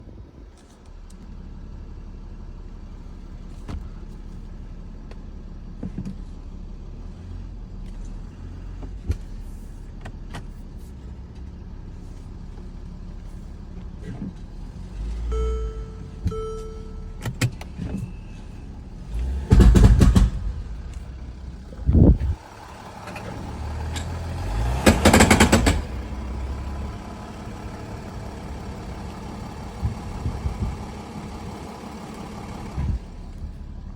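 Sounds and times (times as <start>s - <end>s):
diesel engine running: 0.2s - 33.9s
engine surges: 12.0s - 33.9s
short beeps: 15.3s - 17.4s.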